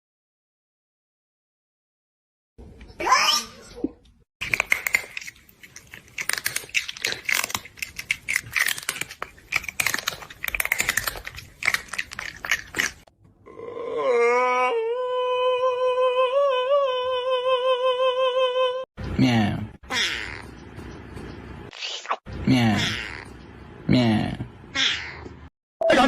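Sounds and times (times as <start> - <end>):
rapid crisp crunching: 4.4 - 13.1.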